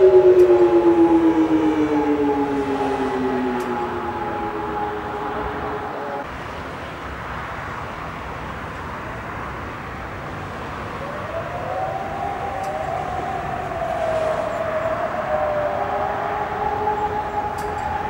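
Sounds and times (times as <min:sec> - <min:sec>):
siren rising and falling wail: 0:00.0 - 0:06.3, 0:10.9 - 0:18.0
steady background rush: 0:00.0 - 0:06.3.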